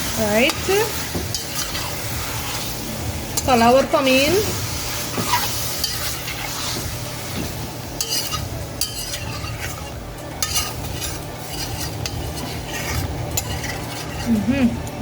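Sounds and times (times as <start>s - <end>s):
chicken sizzling in a pot: 0.0s - 15.0s
spoon scraping and knocking pot: 3.4s - 14.3s.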